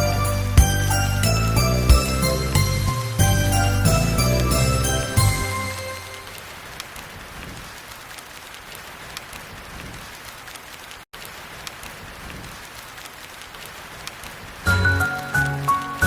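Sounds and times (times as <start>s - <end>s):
steady rain: 0.0s - 16.0s
raindrop ticks: 6.1s - 16.0s.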